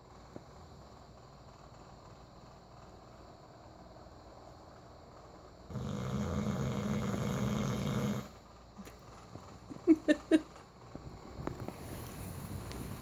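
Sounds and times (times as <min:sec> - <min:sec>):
dog snoring: 0:05.7 - 0:08.4.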